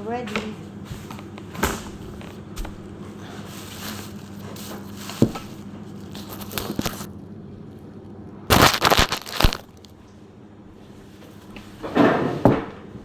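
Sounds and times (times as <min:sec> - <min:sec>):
loud crackly rustle: 0:03.2 - 0:07.1, 0:08.5 - 0:10.0.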